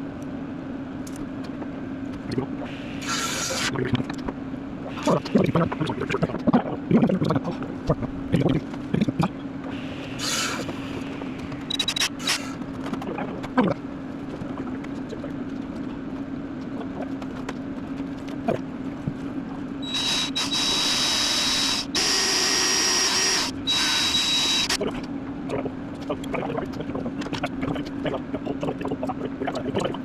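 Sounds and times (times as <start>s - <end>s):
power tool high whine: 2.9s - 3.7s, 10.1s - 11.0s, 12.0s - 12.6s, 19.8s - 24.8s.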